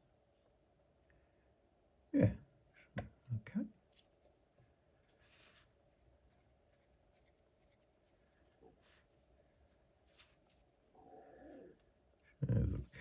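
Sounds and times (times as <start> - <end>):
faint scratching: 3.6 - 11.8.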